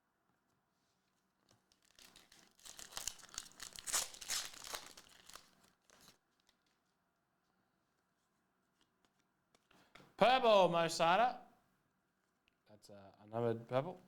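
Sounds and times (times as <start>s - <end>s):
card pack wrapper tearing and crinkling: 1.5s - 6.7s.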